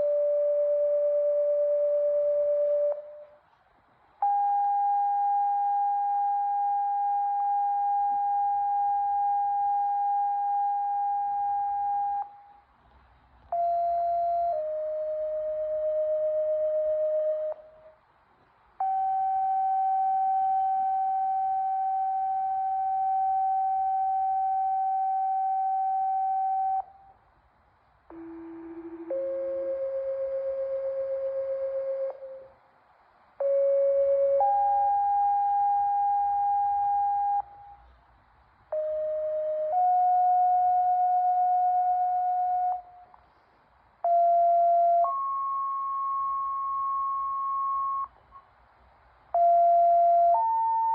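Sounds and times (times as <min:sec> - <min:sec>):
steady radio paging tone: 0:00.0 - 0:03.3, 0:04.2 - 0:12.5, 0:13.5 - 0:17.7, 0:18.8 - 0:27.0, 0:28.1 - 0:32.6, 0:33.4 - 0:37.9, 0:44.0 - 0:48.5, 0:49.3 - 0:50.9.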